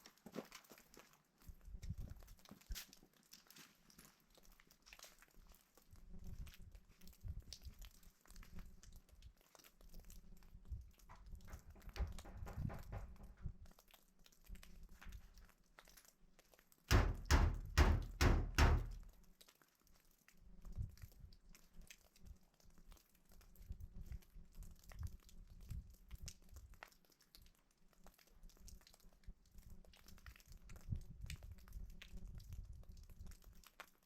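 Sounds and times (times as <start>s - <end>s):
faint crunching and clicking: 0.0s - 12.2s
heavy thumps: 11.1s - 13.5s, 16.9s - 19.0s.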